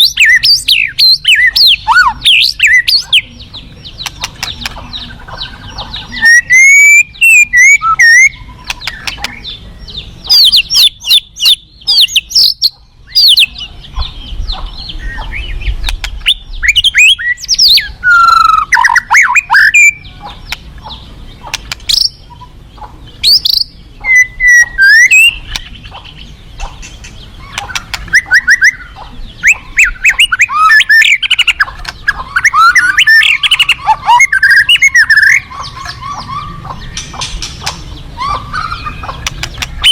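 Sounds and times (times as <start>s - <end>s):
bird singing whistles and clicks: 4.0s - 5.0s, 6.1s - 9.5s, 15.1s - 20.7s, 21.5s - 22.2s, 23.2s - 36.3s, 36.9s - 39.9s.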